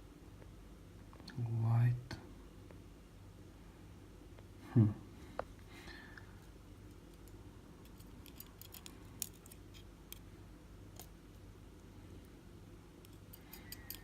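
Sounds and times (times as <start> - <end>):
light metallic clicks of small parts: 6.2 - 10.3, 13.0 - 14.0.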